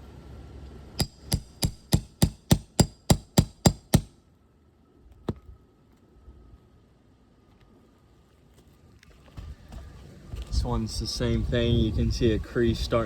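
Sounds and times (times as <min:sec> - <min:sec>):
hammer striking metal nail puller: 0:01.0 - 0:04.2.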